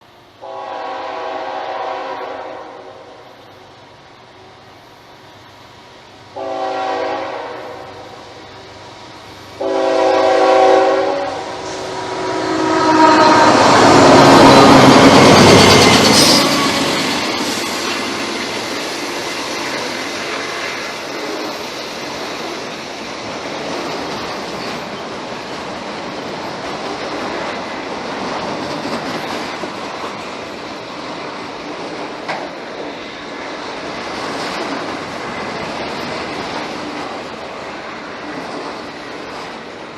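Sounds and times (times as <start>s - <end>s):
railcars rumbling past: 0.0s - 39.9s
locomotive horn blasts: 0.4s - 3.1s, 6.4s - 8.2s, 9.6s - 14.8s
locomotive passing: 0.4s - 39.9s
wheels clicking on rail joints: 13.8s - 39.9s.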